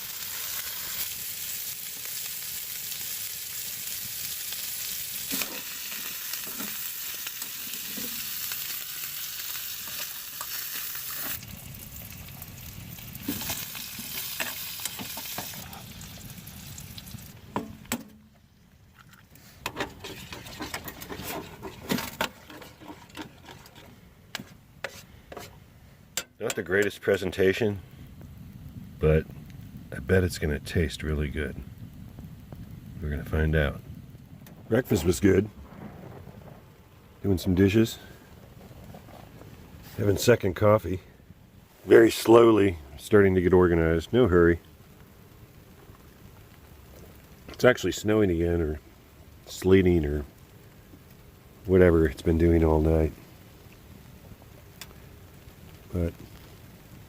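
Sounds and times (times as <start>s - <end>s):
sausage sizzling in a pan: 0.0s - 17.9s
spoon scraping a metal pan: 19.6s - 25.6s.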